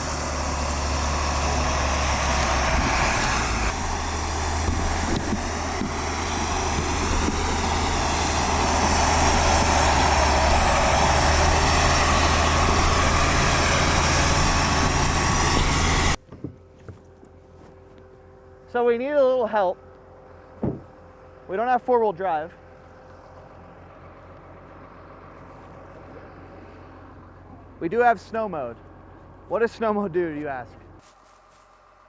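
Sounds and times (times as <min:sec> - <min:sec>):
tyre and road noise: 0:00.0 - 0:17.9
engine drone: 0:00.0 - 0:32.0.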